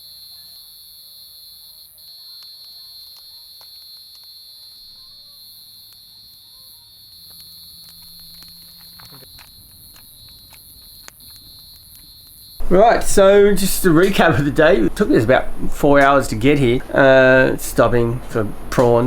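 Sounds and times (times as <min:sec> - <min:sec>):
insect chorus: 0:00.0 - 0:19.0
campfire crackling: 0:02.0 - 0:19.0.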